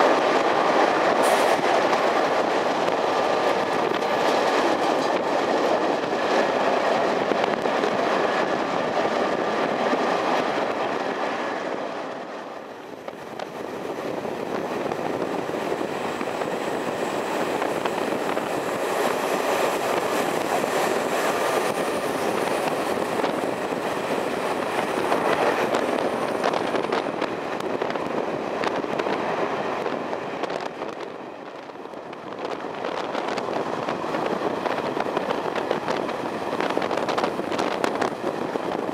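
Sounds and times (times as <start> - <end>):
train rolling: 0.0 - 38.9.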